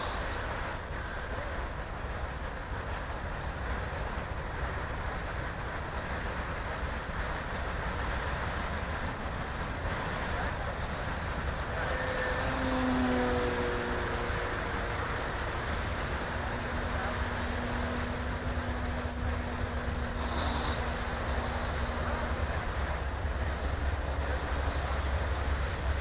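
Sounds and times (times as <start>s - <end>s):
strong wind buffeting microphone: 0.0s - 26.0s
steady hum with a few pitches: 11.7s - 25.6s.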